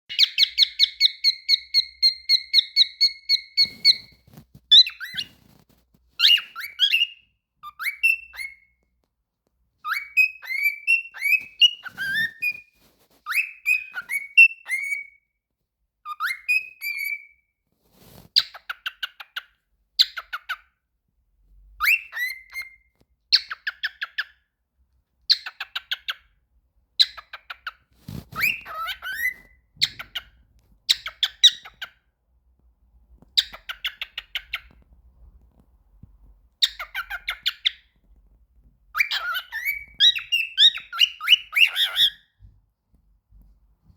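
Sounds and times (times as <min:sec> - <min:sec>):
cockatiel whistling and trilling: 0:00.1 - 0:05.6, 0:06.2 - 0:08.8, 0:09.8 - 0:15.2, 0:16.0 - 0:17.4, 0:18.0 - 0:20.7, 0:21.8 - 0:24.4, 0:25.3 - 0:26.2, 0:27.0 - 0:32.0, 0:33.4 - 0:34.8, 0:36.6 - 0:38.0, 0:38.9 - 0:42.4.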